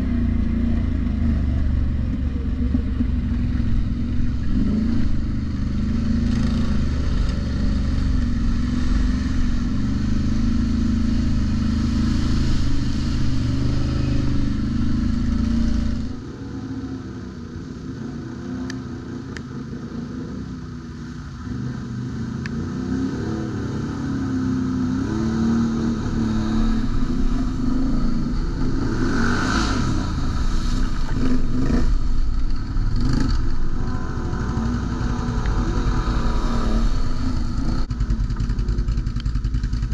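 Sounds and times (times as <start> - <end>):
atv engine running: 0.0 - 21.6, 22.5 - 39.9.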